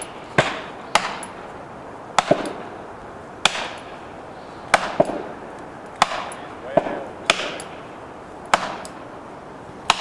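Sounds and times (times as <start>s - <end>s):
heavy blows cracking: 0.0s - 10.0s.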